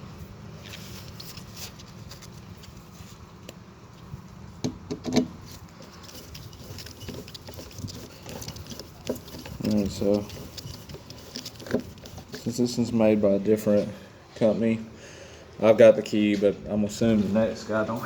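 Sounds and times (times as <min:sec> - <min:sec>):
clicks and scratches of hand work: 0:00.6 - 0:03.6, 0:04.9 - 0:12.8.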